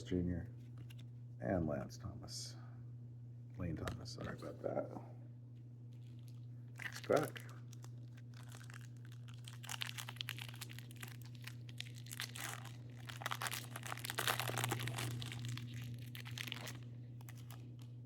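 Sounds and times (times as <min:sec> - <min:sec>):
low electrical hum: 0:00.0 - 0:18.0
wrapper crinkling and tearing: 0:06.0 - 0:18.0.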